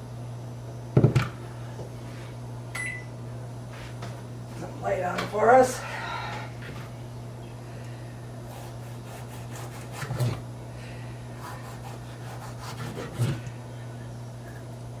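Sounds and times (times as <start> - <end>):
steady low hum: 0.0 - 15.0
knife sawing through tomatoes: 8.5 - 10.4, 11.4 - 13.5.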